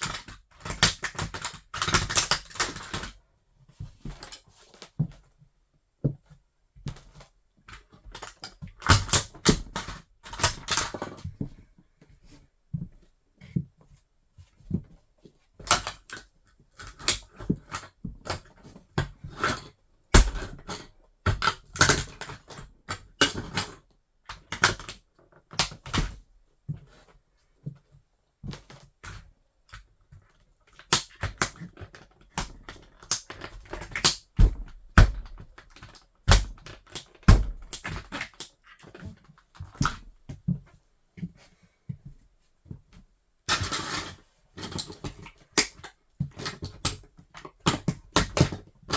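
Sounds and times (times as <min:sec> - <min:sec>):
plastic toy cracking underfoot: 0:20.2 - 0:22.4, 0:30.8 - 0:40.2.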